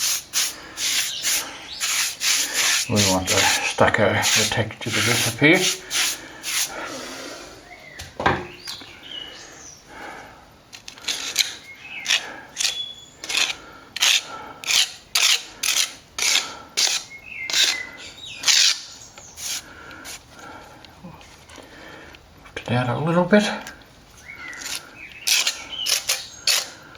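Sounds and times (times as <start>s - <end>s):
brush scrubbing damp plaster: 0.0s - 7.5s.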